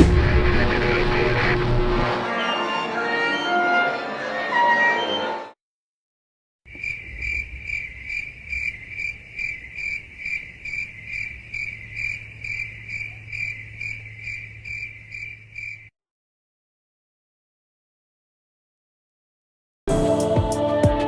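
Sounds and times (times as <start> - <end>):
cricket chirping: 6.7 - 15.9.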